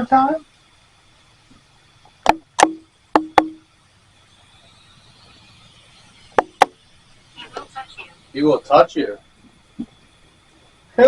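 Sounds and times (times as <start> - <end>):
sharp knocks with ringing tone: 2.2 - 3.7, 6.3 - 6.8.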